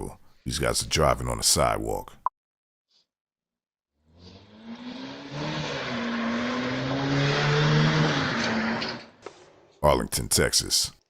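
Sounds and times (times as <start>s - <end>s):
vehicle engine passing by: 4.0s - 9.2s.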